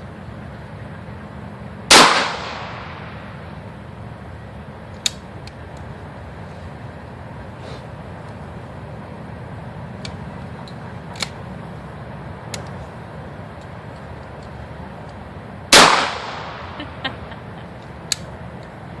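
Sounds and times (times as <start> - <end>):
shotgun shot echoing: 1.9 - 3.2, 15.7 - 16.8.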